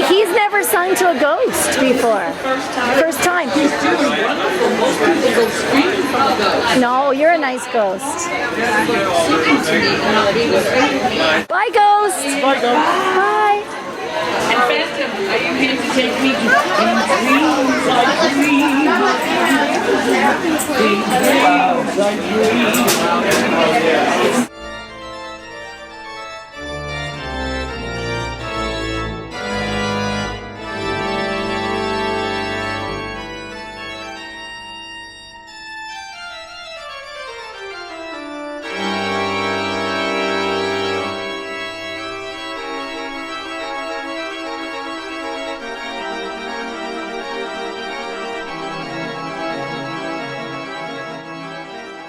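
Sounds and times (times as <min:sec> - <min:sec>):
organ playing sustained chords: 0:12.3 - 0:52.0.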